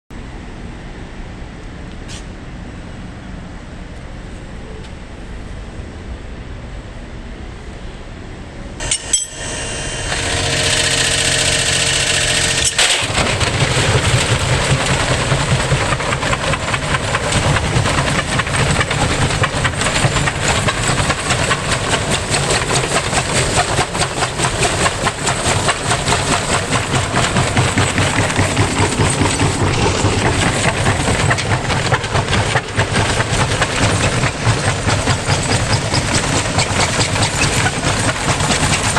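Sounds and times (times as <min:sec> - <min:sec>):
motor whine: 0:08.8 - 0:16.3
washing machine hum: 0:08.8 - 0:38.9
washing machine rattling and banging: 0:10.1 - 0:38.9.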